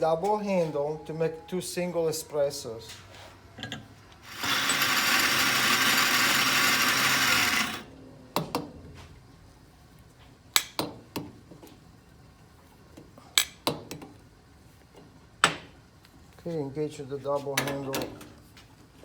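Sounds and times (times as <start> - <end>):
coffee grinder running: 4.2 - 7.9.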